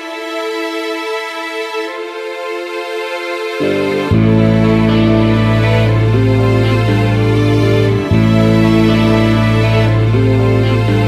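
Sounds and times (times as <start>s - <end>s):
sustained chords music: 0.0s - 11.0s
steady low tone: 3.6s - 11.0s.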